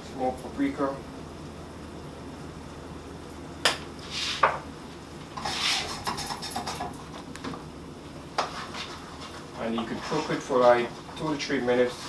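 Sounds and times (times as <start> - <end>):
utensil scraping pan: 5.4 - 6.9.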